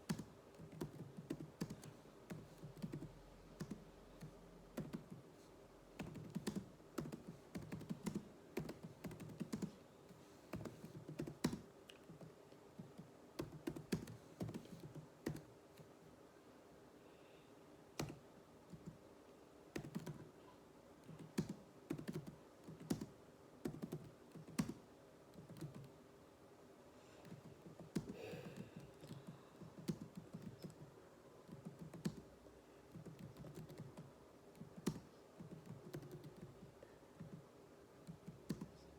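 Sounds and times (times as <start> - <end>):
keyboard typing: 0.0 - 5.2, 6.0 - 9.8, 10.5 - 15.9, 18.0 - 19.0, 19.8 - 20.3, 21.0 - 25.9, 27.2 - 32.3, 32.9 - 37.4, 38.0 - 38.8.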